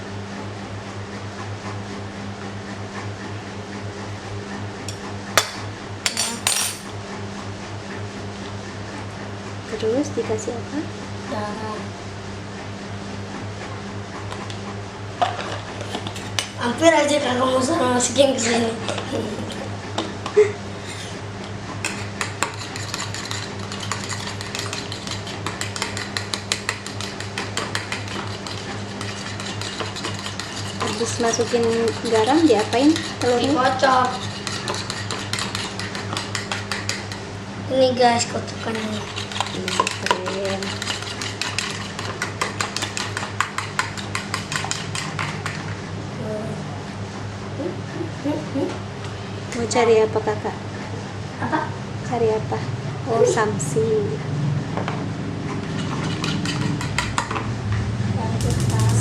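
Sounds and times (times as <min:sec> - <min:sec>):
steady low hum: 0:00.0 - 0:59.0
utensil clinking against bowl: 0:05.4 - 0:06.9, 0:21.9 - 0:37.2, 0:38.7 - 0:45.6
dishes clinking: 0:05.4 - 0:07.0.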